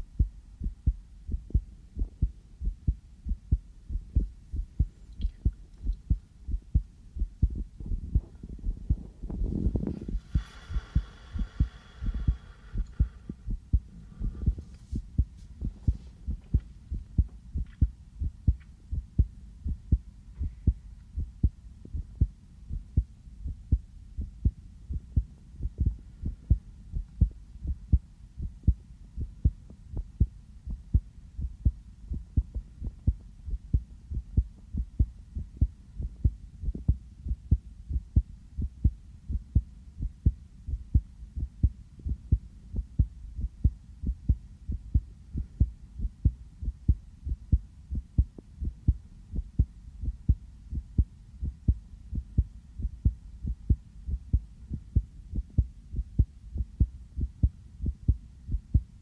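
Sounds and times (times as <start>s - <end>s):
human heartbeat thumps: 0.0s - 59.0s
faint rustle: 8.2s - 16.8s.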